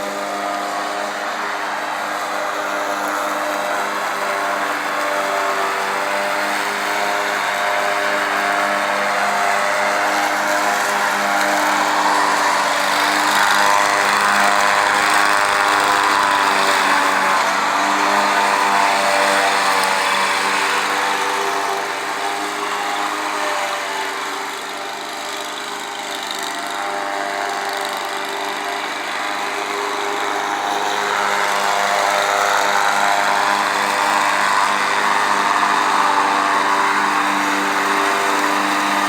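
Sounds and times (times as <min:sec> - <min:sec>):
riding mower engine running: 0:00.0 - 0:39.0.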